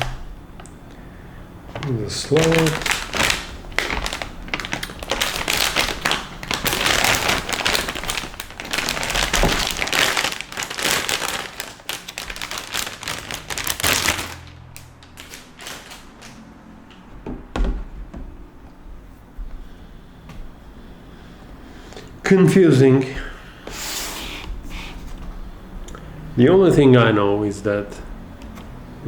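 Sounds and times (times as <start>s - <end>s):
packaging crinkling and rustling: 1.7s - 18.9s.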